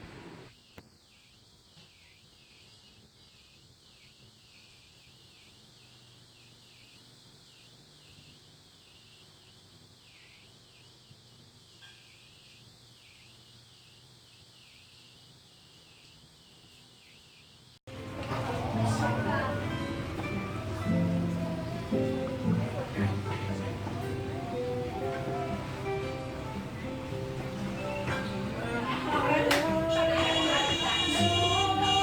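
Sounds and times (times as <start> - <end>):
rain hiss: 0.0 - 32.0.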